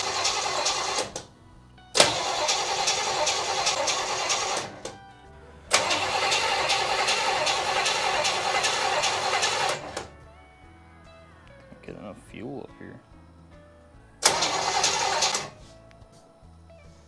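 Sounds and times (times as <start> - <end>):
car engine cranking: 0.0 - 10.5, 14.2 - 15.9.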